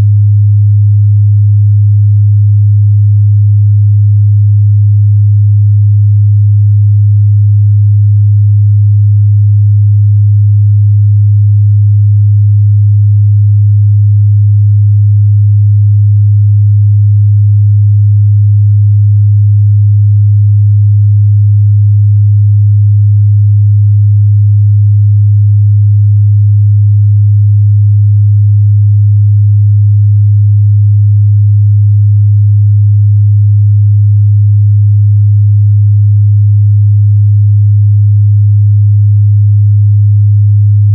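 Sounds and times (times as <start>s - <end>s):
low sine-wave test tone: 0.0s - 40.9s.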